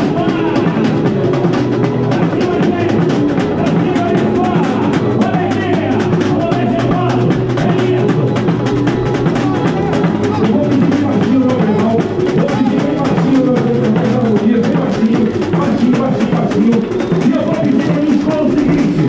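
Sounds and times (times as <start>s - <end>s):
samba percussion beat: 0.0s - 19.0s
voices singing: 0.0s - 19.0s.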